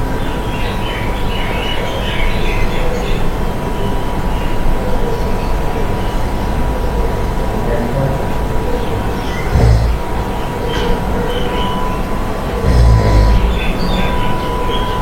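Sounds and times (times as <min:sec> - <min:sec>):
moving vehicle rumble: 0:06.3 - 0:15.0.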